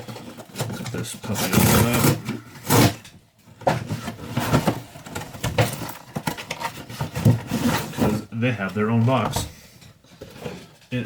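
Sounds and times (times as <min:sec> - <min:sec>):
cardboard box tearing and rustling: 0:01.2 - 0:03.0.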